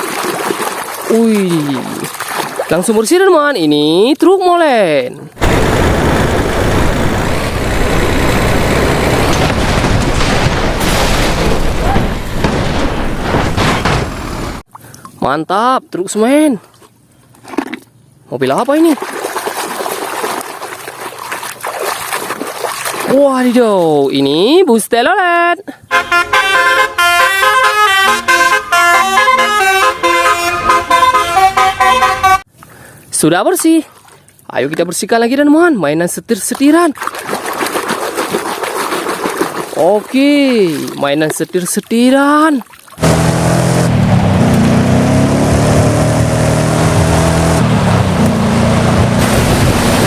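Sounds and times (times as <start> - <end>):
bus horn playing a fast tune: 25.9 - 32.5.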